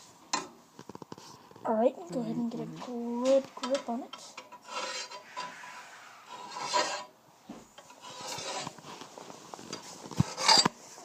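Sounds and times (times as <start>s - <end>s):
file scraping metal blade: 3.7s - 7.1s, 7.9s - 8.8s, 10.2s - 10.8s.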